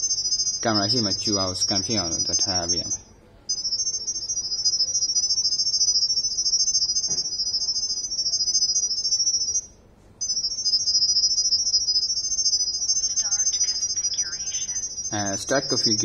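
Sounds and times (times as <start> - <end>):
high-pitched pulsing electronic tone: 0.0 - 3.0, 10.3 - 16.0.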